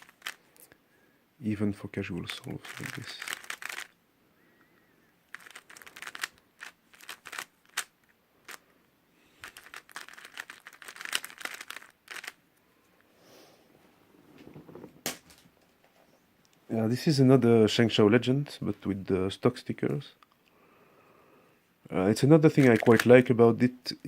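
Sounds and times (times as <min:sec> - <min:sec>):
puzzle cube clicking: 0:00.0 - 0:00.4, 0:02.6 - 0:03.9, 0:05.3 - 0:08.6, 0:09.4 - 0:12.4, 0:22.5 - 0:23.3.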